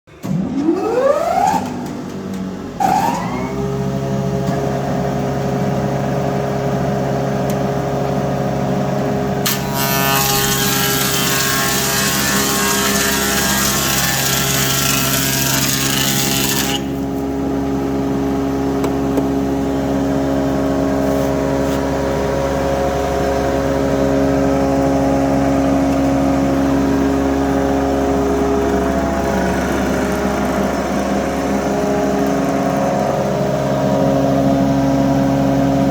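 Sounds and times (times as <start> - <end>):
planer motor whine and hum: 0.1 - 35.9
board being planed: 9.4 - 17.3.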